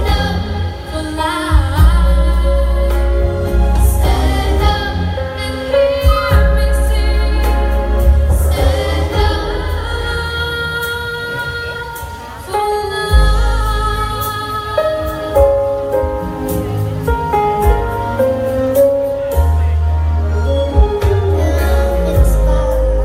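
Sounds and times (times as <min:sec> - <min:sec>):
person singing: 0:00.0 - 0:16.6, 0:20.1 - 0:23.0
deep sustained bass: 0:01.5 - 0:10.7, 0:13.1 - 0:14.5, 0:16.0 - 0:23.0.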